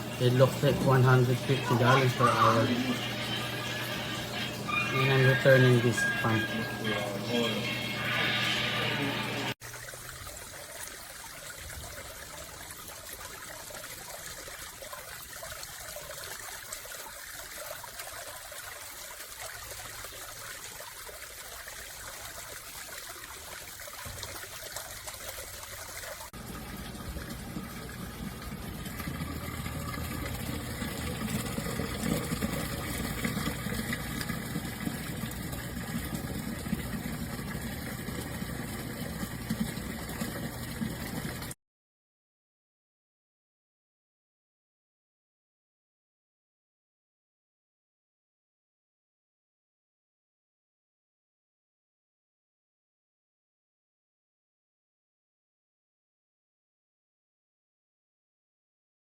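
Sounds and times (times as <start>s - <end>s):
pond pump humming: 0.0s - 41.6s
water trickling and splashing: 0.0s - 41.6s.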